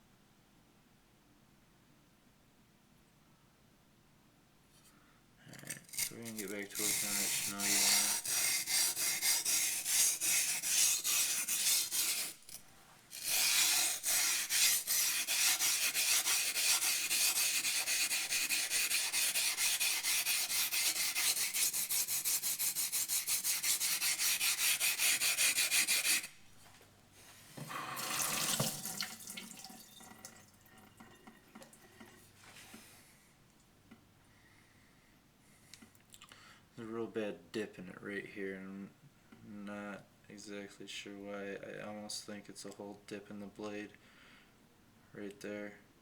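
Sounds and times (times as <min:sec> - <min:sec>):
knife scraping on wet whetstone: 0:05.8 - 0:26.3.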